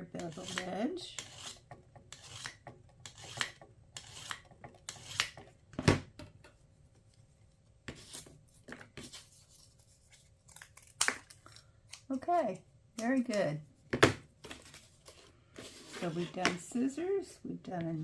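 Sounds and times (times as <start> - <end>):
blade rasping on sharpener: 0.2 - 5.4.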